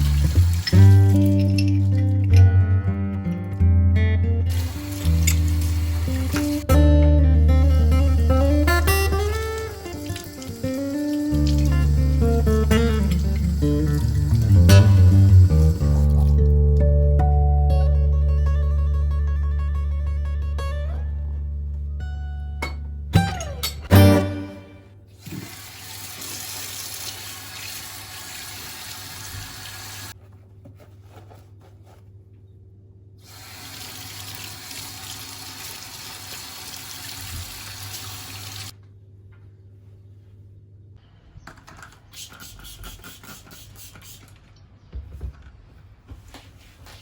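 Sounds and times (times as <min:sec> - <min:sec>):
tap water running into sink: 0:00.0 - 0:02.1, 0:04.5 - 0:06.7, 0:08.6 - 0:16.5, 0:25.2 - 0:30.1, 0:33.3 - 0:38.7.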